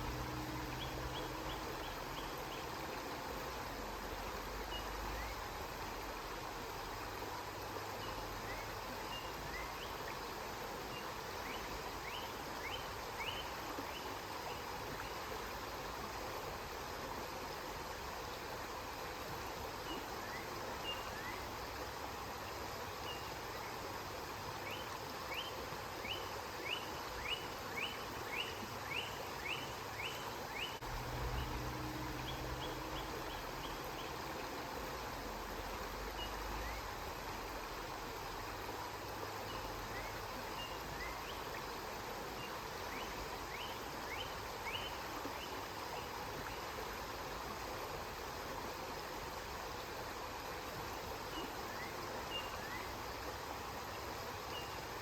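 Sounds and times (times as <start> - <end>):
river water rushing: 0.0 - 55.0
low hum: 30.8 - 33.9.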